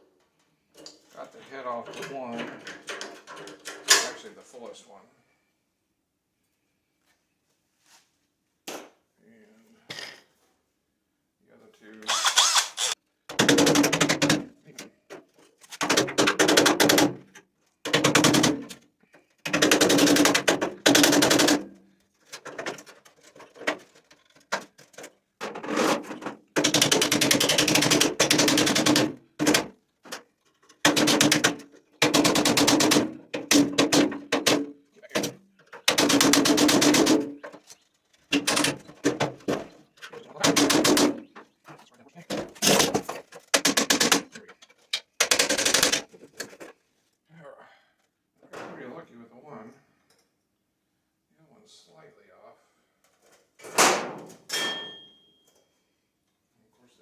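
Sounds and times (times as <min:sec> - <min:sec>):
electric drill running under load: 0:12.1 - 0:13.0.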